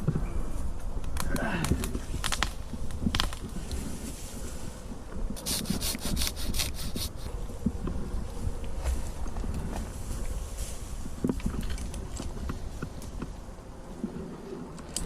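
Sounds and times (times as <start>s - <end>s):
wind rumble on microphone: 0.0s - 15.0s
handsaw cutting wood: 5.4s - 7.3s.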